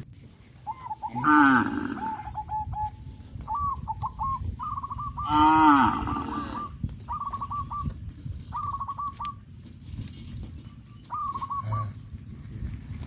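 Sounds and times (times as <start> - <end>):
low rumbling: 0.0 - 13.0
dove cooing: 0.6 - 9.5, 10.6 - 12.1.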